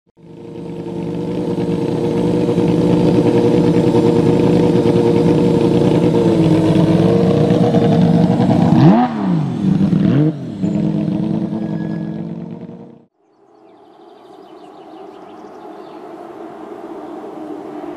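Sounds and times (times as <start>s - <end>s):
rally car engine revving: 0.2s - 13.1s.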